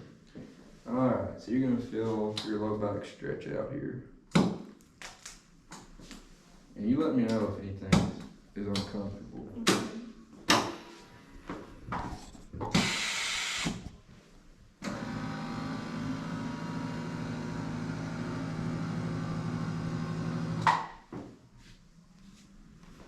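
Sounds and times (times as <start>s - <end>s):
electric motor humming: 14.8s - 20.6s.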